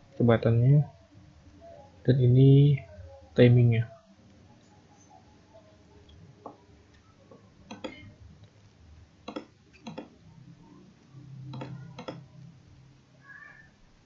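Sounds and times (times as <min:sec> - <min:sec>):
computer mouse clicks: 0:07.7 - 0:08.0, 0:09.3 - 0:10.1, 0:11.5 - 0:12.3.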